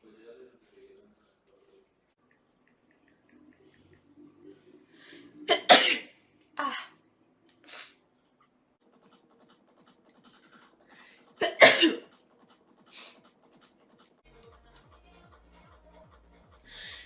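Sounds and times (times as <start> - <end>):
person sneezing: 5.5 - 6.8, 11.4 - 12.1
breaths and sniffs: 8.8 - 17.0.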